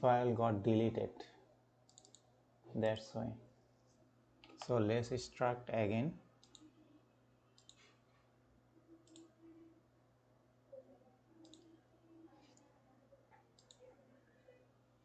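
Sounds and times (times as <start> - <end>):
computer mouse clicks: 1.9 - 2.3, 6.4 - 6.7, 7.6 - 7.9, 9.0 - 9.3, 11.4 - 11.7, 13.6 - 13.8.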